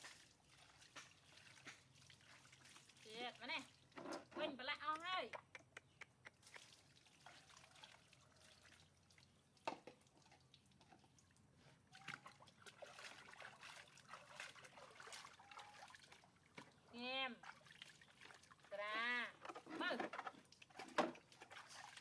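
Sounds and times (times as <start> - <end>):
water trickling and dripping: 0.0 - 19.3.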